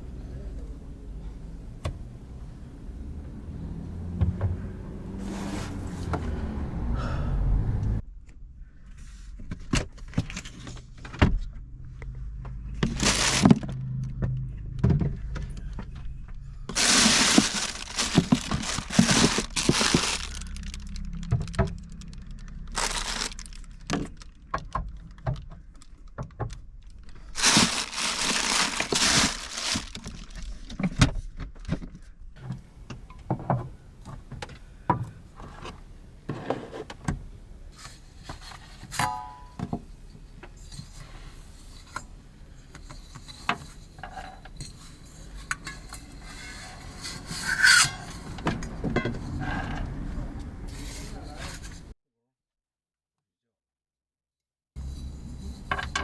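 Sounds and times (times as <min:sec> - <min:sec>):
rustling: 0:00.0 - 0:08.0, 0:16.7 - 0:24.1, 0:27.1 - 0:30.7, 0:32.4 - 0:52.0, 0:54.8 - 0:56.0.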